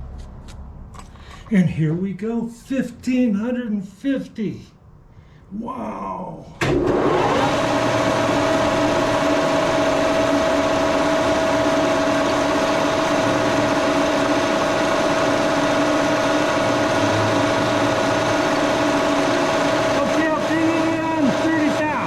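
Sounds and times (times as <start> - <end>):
milling machine whining: 6.6 - 22.0.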